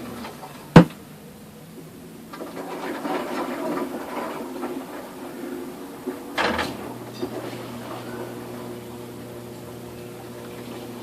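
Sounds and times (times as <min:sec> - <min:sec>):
washing machine drum rattling: 0:02.3 - 0:08.5.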